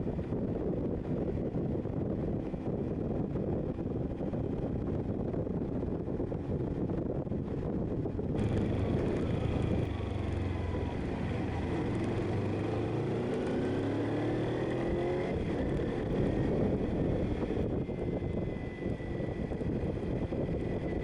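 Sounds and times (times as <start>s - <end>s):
motorcycle engine accelerating: 8.3s - 21.0s.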